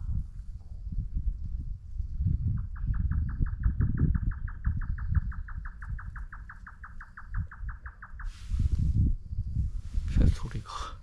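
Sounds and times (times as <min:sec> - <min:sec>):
bird trilling: 0:02.6 - 0:08.4.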